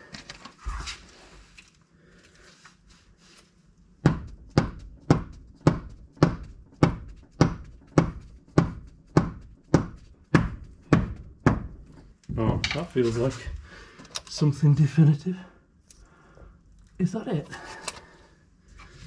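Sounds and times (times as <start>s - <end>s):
rubber mallet thuds on metal: 4.0s - 11.8s.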